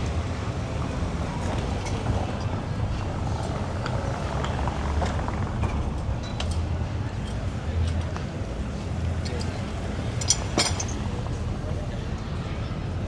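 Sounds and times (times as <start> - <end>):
motor vehicles rumbling past: 0.0 - 13.0.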